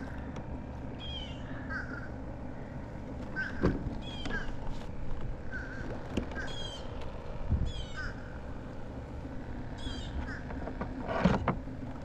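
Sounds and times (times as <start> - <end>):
birds calling: 0.0 - 12.0
low wind rumble on microphone: 3.4 - 8.4.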